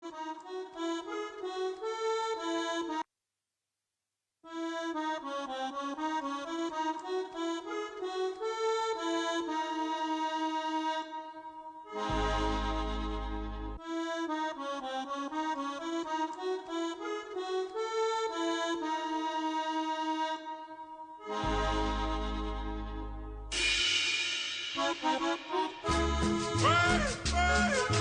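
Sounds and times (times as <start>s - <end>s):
accordion playing a quick melody: 0.0s - 3.1s, 4.5s - 28.0s.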